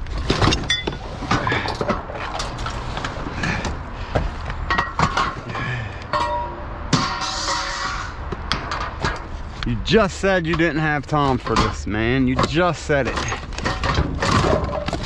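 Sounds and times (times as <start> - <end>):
scrap metal knocking and clinking: 0.2 - 9.7, 10.3 - 15.0
metallic ring: 6.1 - 8.2.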